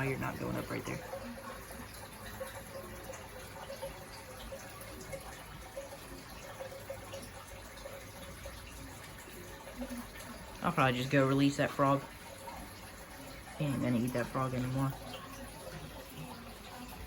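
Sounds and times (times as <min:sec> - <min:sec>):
water trickling and dripping: 0:00.0 - 0:17.0.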